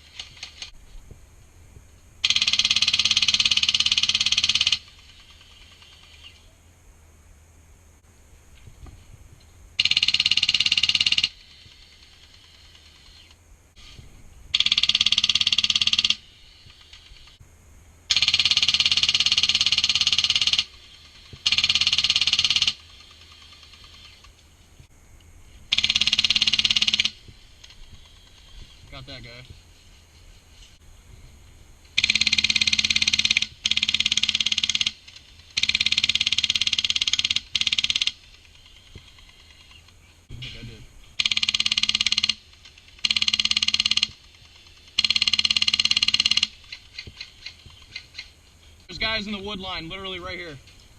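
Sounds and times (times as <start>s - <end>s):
airsoft gun full-auto bursts: 2.2s - 6.1s, 9.8s - 11.4s, 14.5s - 16.2s, 18.1s - 24.0s, 25.7s - 27.2s, 32.0s - 38.8s, 41.2s - 46.6s.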